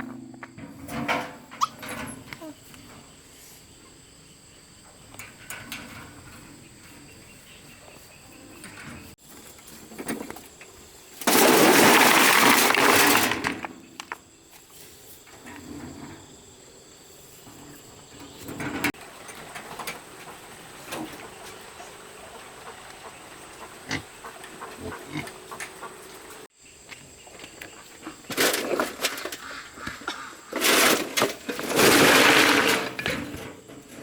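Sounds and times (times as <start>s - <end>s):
stones clattering: 11.3s - 14.2s.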